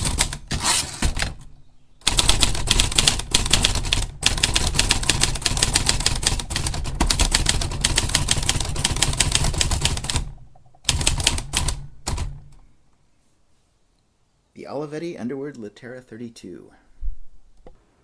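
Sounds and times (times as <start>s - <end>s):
manual typewriter typing fast: 0.0s - 12.6s.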